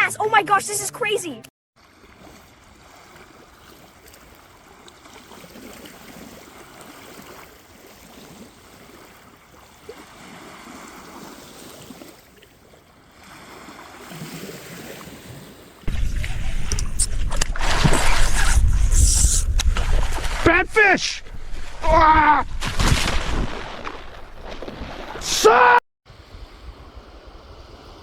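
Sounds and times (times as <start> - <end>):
gently moving water: 15.9 - 25.4.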